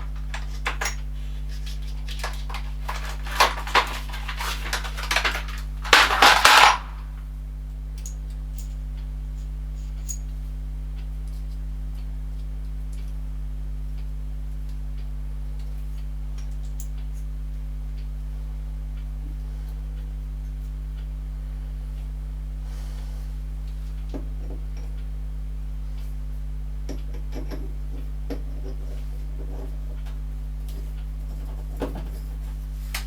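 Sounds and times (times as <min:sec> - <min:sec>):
electrical hum: 0:00.0 - 0:33.0.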